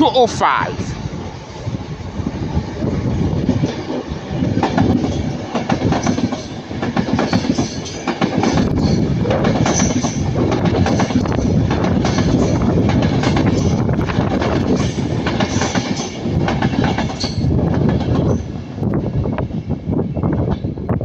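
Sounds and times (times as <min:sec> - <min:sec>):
train rumble: 0:00.0 - 0:21.0
wheels clattering over rail joints: 0:03.4 - 0:18.5.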